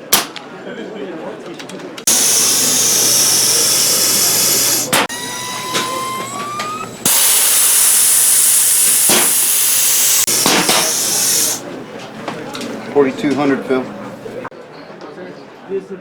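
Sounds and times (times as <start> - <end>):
loud steady hiss: 2.1 - 11.6.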